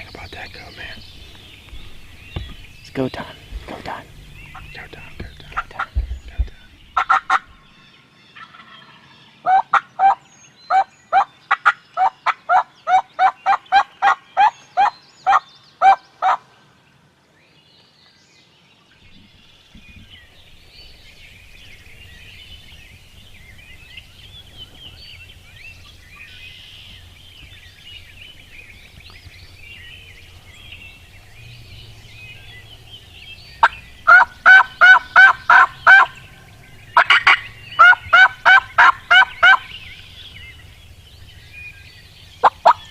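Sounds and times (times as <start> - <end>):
faint songbirds chirping: 0.0 - 42.9
turkey calling: 0.3 - 7.7, 8.4 - 16.4, 32.0 - 42.9.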